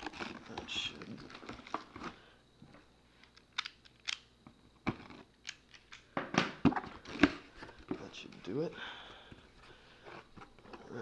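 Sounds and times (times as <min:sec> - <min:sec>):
soft packaging rustling: 0:00.0 - 0:03.5.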